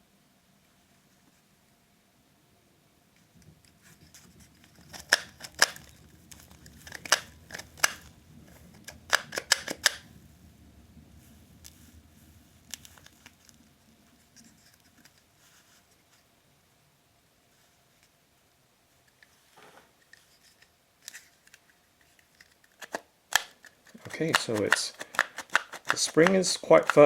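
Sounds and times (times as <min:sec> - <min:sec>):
plastic clicks and taps: 0:08.8 - 0:10.0.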